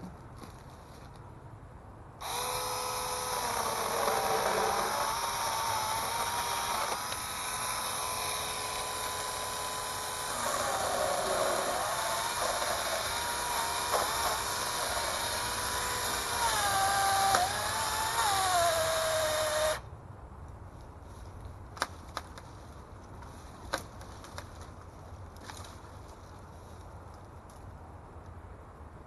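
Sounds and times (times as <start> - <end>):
mini chainsaw whining: 2.2 - 19.8.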